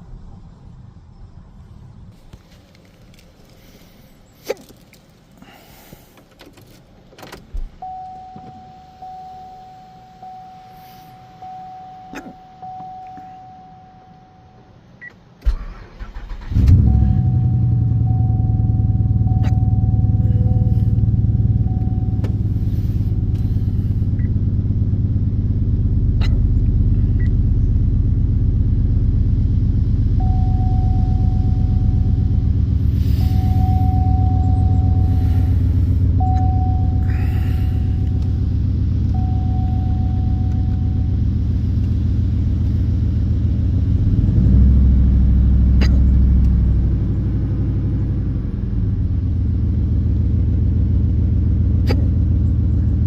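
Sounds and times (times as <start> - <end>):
engine idling: 7.4 - 53.0
repeating chime: 33.3 - 35.4.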